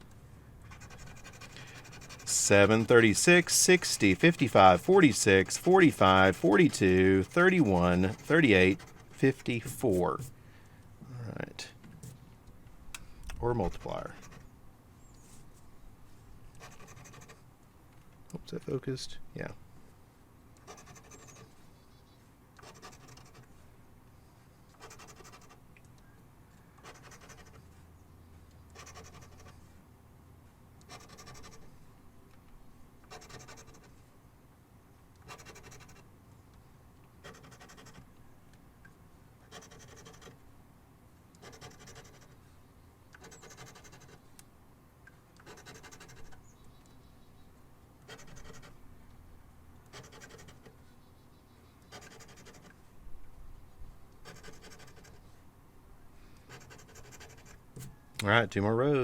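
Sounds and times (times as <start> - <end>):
scratch-off ticket being scratched: 0.6 - 10.3, 16.6 - 17.4, 20.6 - 21.5, 22.6 - 23.5, 24.8 - 25.6, 26.8 - 27.7, 28.7 - 29.6, 30.8 - 31.7, 33.1 - 34.0, 35.2 - 36.0, 37.2 - 38.1, 39.5 - 40.4, 41.4 - 42.4, 43.2 - 44.3, 45.4 - 46.4, 48.0 - 48.8, 49.9 - 50.8, 51.9 - 52.7, 54.2 - 55.3, 56.5 - 57.9.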